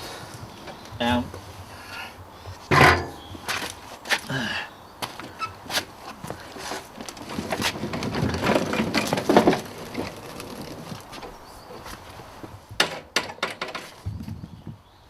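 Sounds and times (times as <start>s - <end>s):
sharp knocks: 2.7s - 3.2s.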